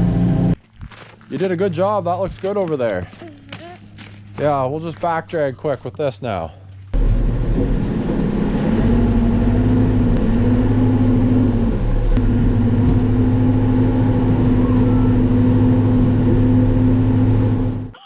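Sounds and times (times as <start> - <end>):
excavator diesel engine running: 7.0 - 18.0
wavering whine: 7.0 - 18.0.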